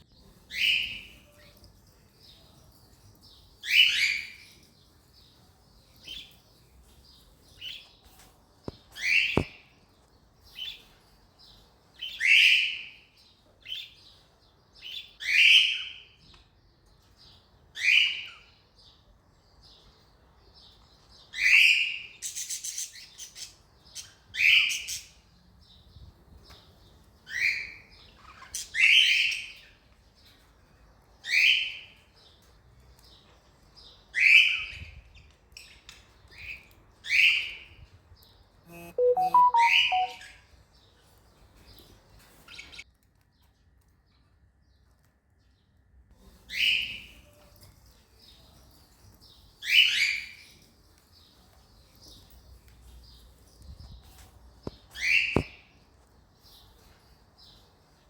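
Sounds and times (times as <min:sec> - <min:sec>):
soft short bird chirps: 0:38.7 - 0:40.3.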